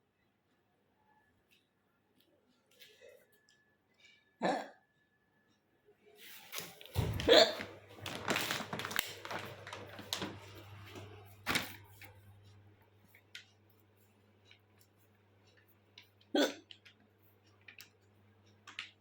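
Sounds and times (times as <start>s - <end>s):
person hiccuping: 4.4s - 4.8s, 7.2s - 7.6s, 16.3s - 16.7s
rustling: 6.2s - 12.1s.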